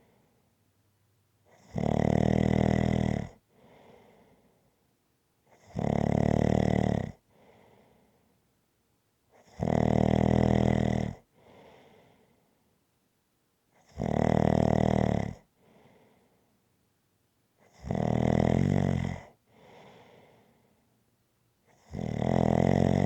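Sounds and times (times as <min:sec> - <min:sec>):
person snoring: 0:01.6 - 0:03.3, 0:13.9 - 0:15.4, 0:21.8 - 0:23.0
soft breath: 0:03.5 - 0:04.8, 0:07.3 - 0:08.4, 0:11.3 - 0:12.7, 0:15.6 - 0:16.6, 0:19.4 - 0:20.9.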